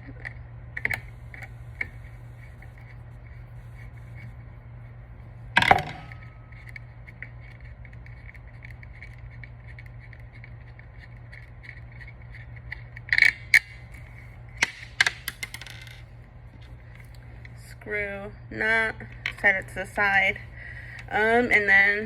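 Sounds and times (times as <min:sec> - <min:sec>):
steady low hum: 0:00.0 - 0:22.0
screwdriver ticking and scraping: 0:06.2 - 0:15.7.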